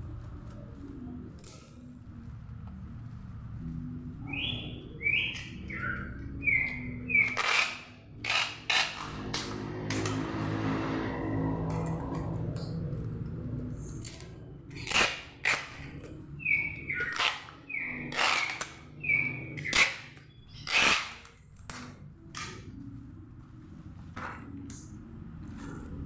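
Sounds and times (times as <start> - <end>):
packing tape ripping off roll: 7.2 - 10.3, 14.0 - 16.1, 17.0 - 18.9, 19.6 - 22.7.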